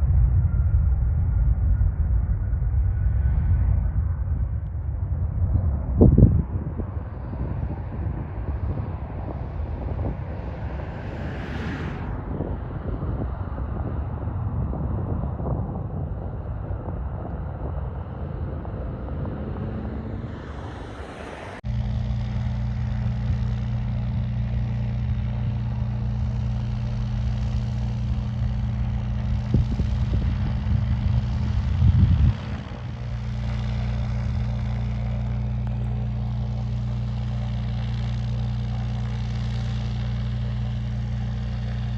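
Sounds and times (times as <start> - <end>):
aircraft engine rumble: 0.0 - 41.9
low engine drone: 0.0 - 41.9.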